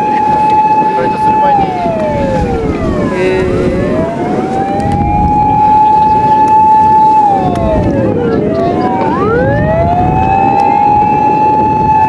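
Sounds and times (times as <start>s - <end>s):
fire engine sirens wailing: 0.0s - 12.0s.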